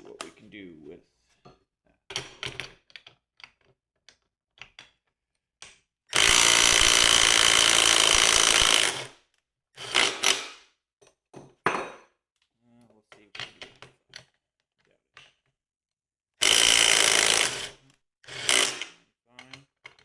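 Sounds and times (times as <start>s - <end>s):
impact driver hammering: 6.2s - 9.1s, 9.9s - 10.6s, 16.4s - 17.7s, 18.4s - 18.9s.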